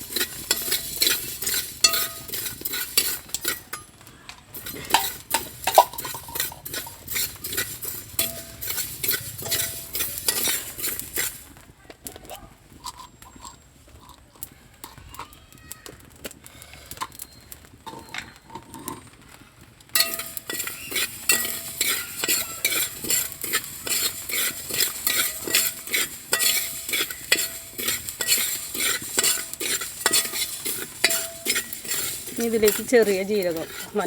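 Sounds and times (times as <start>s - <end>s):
spoon scraping rice in pot: 0.0s - 11.6s, 12.2s - 15.3s, 17.9s - 19.2s, 20.0s - 34.0s
vessel ringing: 0.1s - 3.9s, 4.6s - 11.0s, 20.0s - 34.0s.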